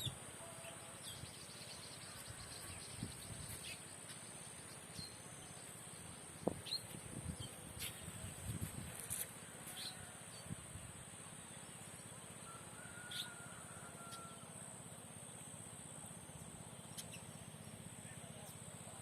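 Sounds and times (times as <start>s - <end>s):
insects droning: 0.0s - 19.0s
bird chirps: 16.8s - 17.7s.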